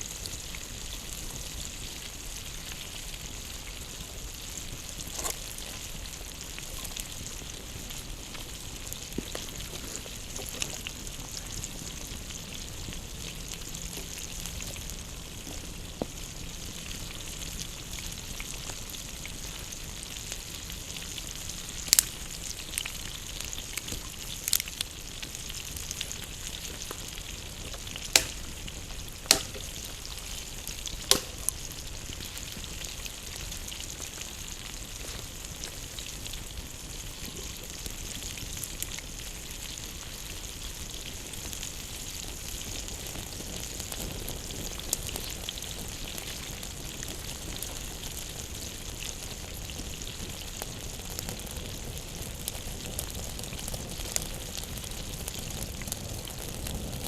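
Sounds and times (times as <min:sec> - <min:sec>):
food sizzling: 0:00.0 - 0:56.9
sharp pops: 0:28.1 - 0:29.9, 0:31.0 - 0:31.6.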